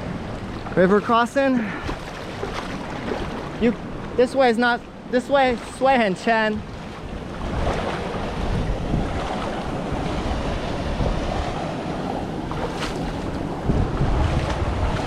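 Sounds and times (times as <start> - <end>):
river water rushing: 0.0 - 15.0
wind buffeting microphone: 5.4 - 15.0.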